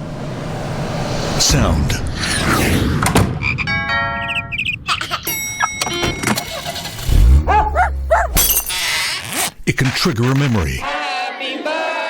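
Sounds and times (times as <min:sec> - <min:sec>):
car engine rumble: 0:06.1 - 0:08.8.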